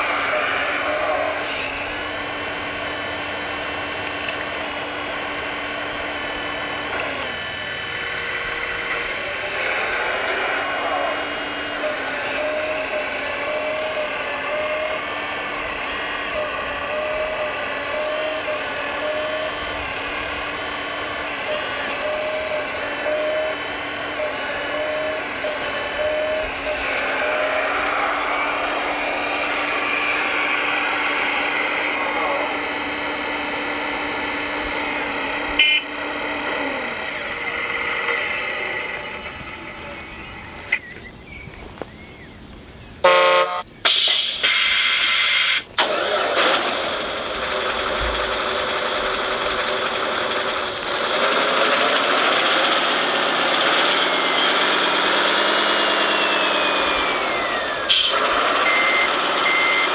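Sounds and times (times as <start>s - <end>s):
small electric motors whining: 0.0s - 59.9s
sharp click: 43.8s - 46.8s.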